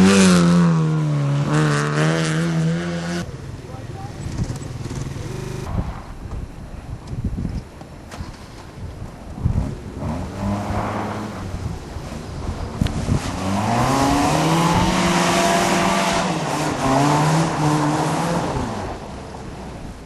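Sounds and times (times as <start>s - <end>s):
rally car engine revving: 0.0s - 3.3s, 9.3s - 19.6s.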